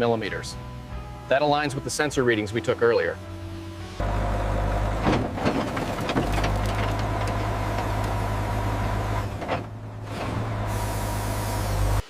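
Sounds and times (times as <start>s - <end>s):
heavy machinery humming: 3.2s - 12.0s.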